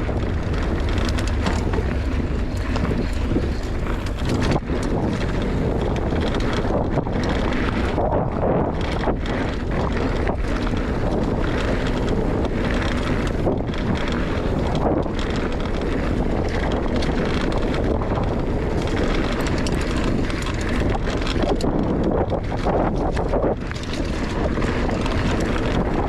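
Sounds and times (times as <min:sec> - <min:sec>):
tyre rumble on dirt: 0:00.0 - 0:04.6
bike clicks and rattles: 0:00.0 - 0:26.0
wind buffeting microphone: 0:00.0 - 0:26.0.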